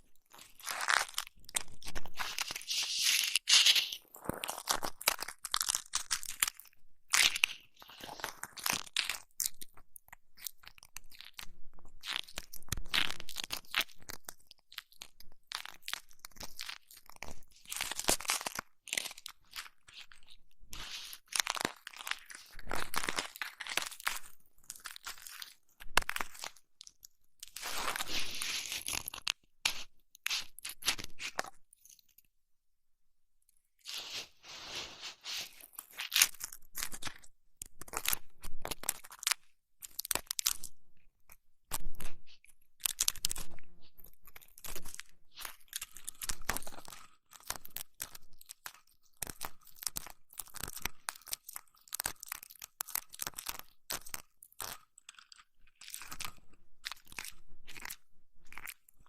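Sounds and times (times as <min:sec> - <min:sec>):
crunchy rubbing on microphone: 0:00.6 - 0:04.6, 0:27.6 - 0:28.9, 0:33.8 - 0:37.1.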